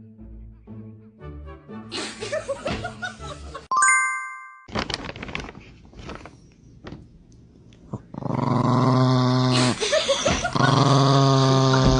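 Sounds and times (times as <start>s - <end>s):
dog growling: 7.9s - 9.8s, 10.4s - 11.9s.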